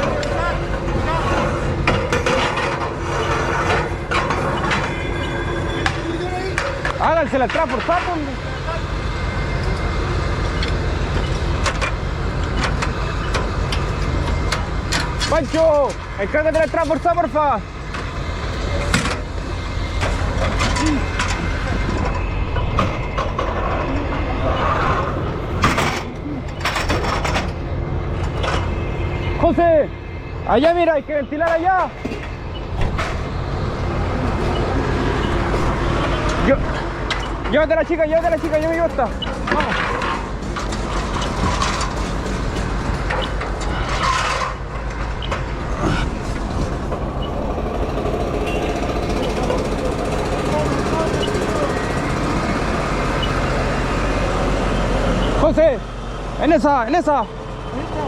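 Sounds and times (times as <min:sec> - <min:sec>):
engine rumbling: 0:00.0 - 0:58.0.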